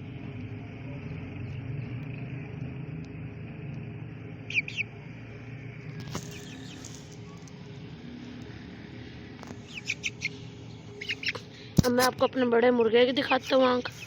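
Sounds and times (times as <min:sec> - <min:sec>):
steady low hum: 0:00.0 - 0:14.0
chicks peeping: 0:04.5 - 0:04.9, 0:05.9 - 0:07.6, 0:09.4 - 0:12.2, 0:13.2 - 0:14.0.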